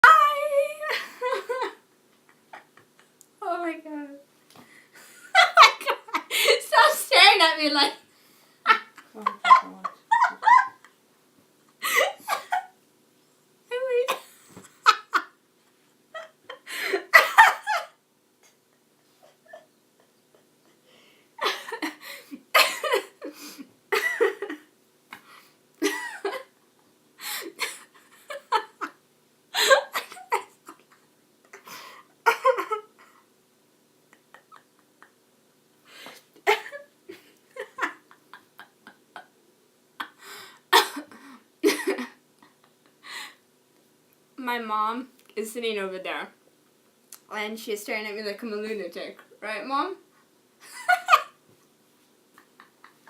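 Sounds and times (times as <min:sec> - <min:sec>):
woman laughing uncontrollably: 0:00.8 - 0:01.8, 0:05.0 - 0:06.7, 0:08.7 - 0:11.0, 0:11.8 - 0:12.8, 0:16.1 - 0:18.0, 0:19.1 - 0:20.5, 0:21.4 - 0:23.3, 0:23.9 - 0:24.6, 0:25.8 - 0:26.5, 0:29.6 - 0:30.9, 0:32.2 - 0:33.0, 0:34.1 - 0:35.2, 0:36.4 - 0:39.3, 0:50.6 - 0:51.4.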